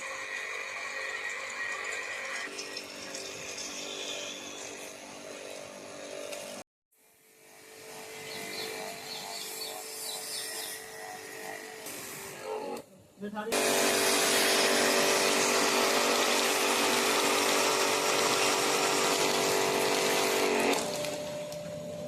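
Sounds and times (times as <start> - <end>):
motor humming: 7.4 - 12.9.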